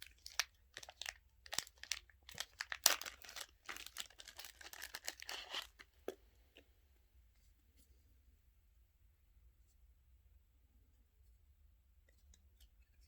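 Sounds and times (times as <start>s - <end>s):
card packaging crinkling and tearing: 0.0s - 6.0s.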